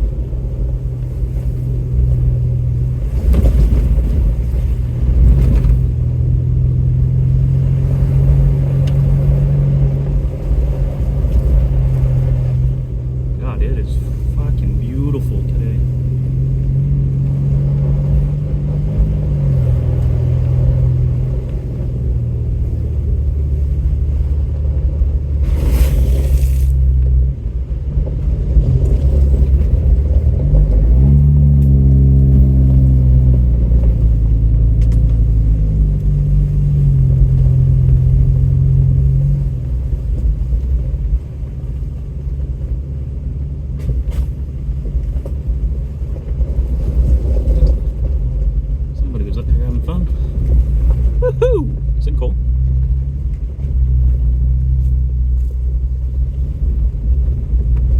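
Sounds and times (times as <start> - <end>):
truck engine revving: 1.5 - 24.2, 28.2 - 39.8.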